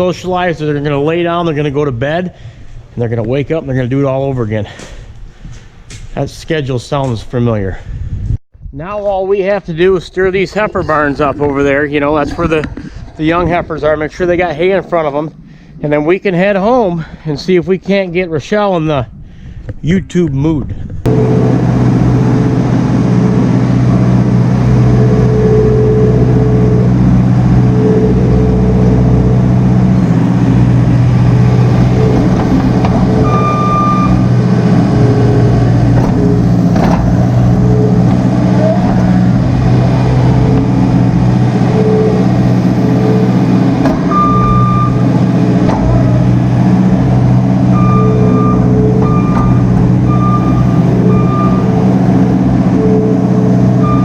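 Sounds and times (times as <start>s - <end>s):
farm vehicle engine running: 21.1s - 54.0s
reversing alarm beeping: 21.1s - 54.0s.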